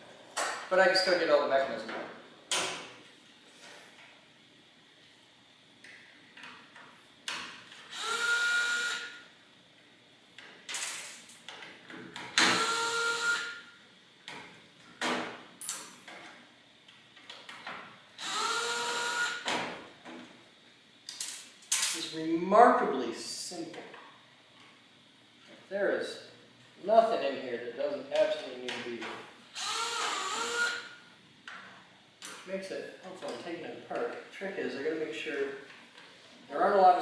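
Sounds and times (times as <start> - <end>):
electric drill motor whine: 7.9 - 9.2, 12.4 - 13.6, 18.2 - 19.5, 29.6 - 31.0.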